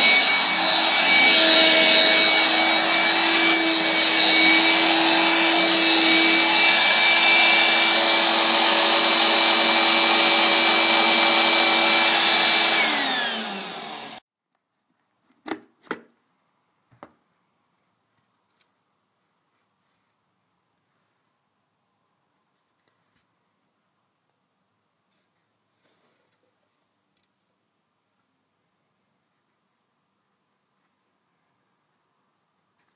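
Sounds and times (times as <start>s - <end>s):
vacuum cleaner whining: 0.0s - 14.2s.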